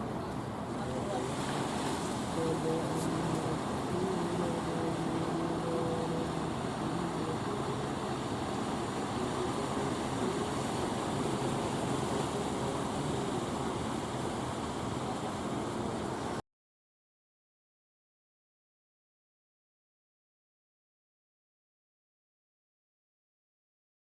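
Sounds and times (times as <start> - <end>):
ocean surf rushing: 0.0 - 16.4.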